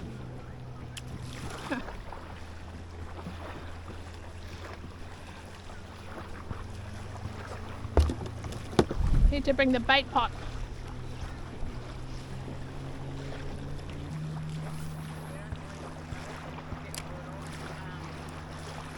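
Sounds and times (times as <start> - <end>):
wind buffeting microphone: 7.8 - 12.8
thump: 8.0 - 9.1.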